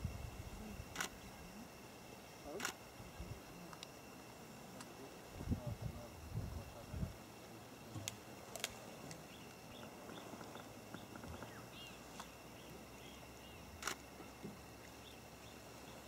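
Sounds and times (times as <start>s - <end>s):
faint bird chirps: 9.2s - 13.9s.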